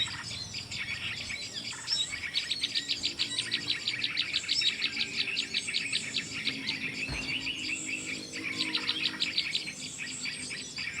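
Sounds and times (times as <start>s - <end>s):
birds twittering: 0.0s - 11.0s
songbirds chirping: 0.0s - 11.0s.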